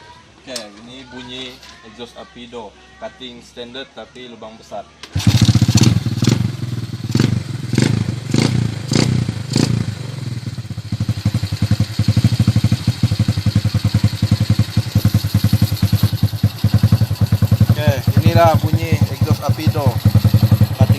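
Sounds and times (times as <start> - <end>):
motorcycle engine revving and idling: 5.1 - 20.9.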